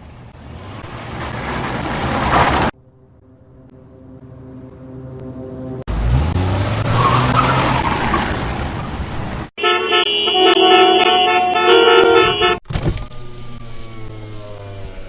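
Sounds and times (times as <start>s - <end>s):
tyres and exhaust rushing: 0.0s - 15.0s
car accelerating hard: 5.8s - 9.2s
car horn blaring: 9.6s - 12.7s.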